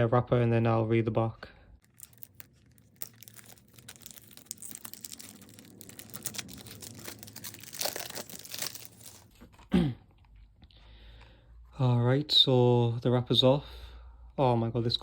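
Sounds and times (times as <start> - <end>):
plastic wrapper crinkling: 1.8 - 9.6.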